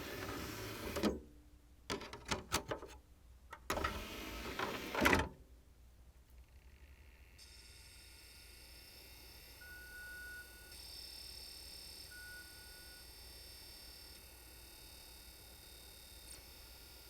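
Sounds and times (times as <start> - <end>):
disc tray motor: 0.0 - 1.2, 3.6 - 5.3.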